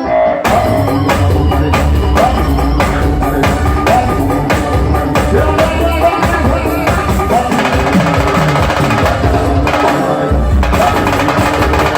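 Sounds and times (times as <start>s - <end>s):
drums and percussion: 0.0s - 11.9s
live band music: 0.0s - 11.9s
strong bass line: 0.4s - 11.9s.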